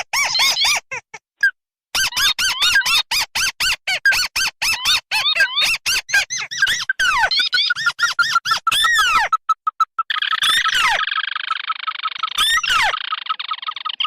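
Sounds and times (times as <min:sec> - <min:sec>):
crake calls: 0:04.8 - 0:14.0.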